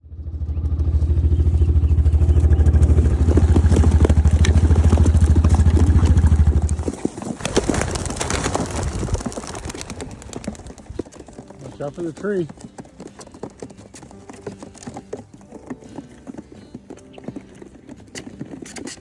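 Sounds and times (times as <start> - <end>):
vehicle engine running: 0.0 - 12.6
light clatters and flutters: 2.3 - 19.0.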